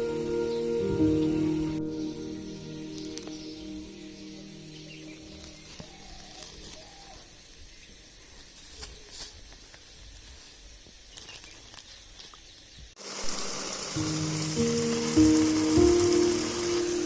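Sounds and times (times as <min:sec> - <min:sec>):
heavy rain downpour: 0:13.0 - 0:17.0.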